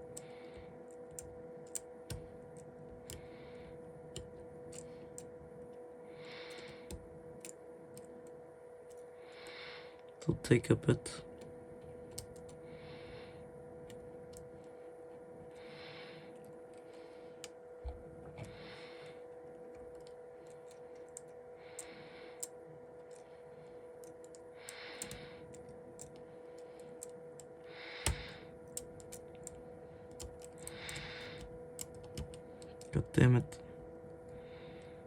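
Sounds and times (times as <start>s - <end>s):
steady electrical hum: 0.0s - 35.0s
small clicks and taps: 0.1s - 3.4s, 4.1s - 5.3s, 24.0s - 32.9s.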